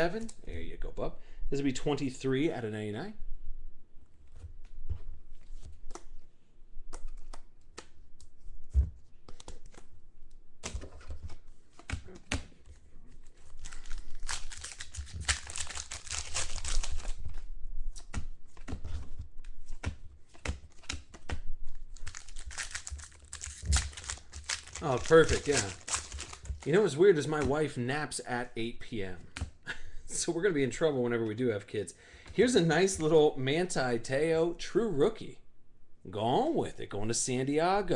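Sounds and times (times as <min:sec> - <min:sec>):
cards shuffled: 0:06.9 - 0:09.9, 0:10.6 - 0:26.8
wrappers tearing and crinkling: 0:13.2 - 0:17.4, 0:21.9 - 0:26.8.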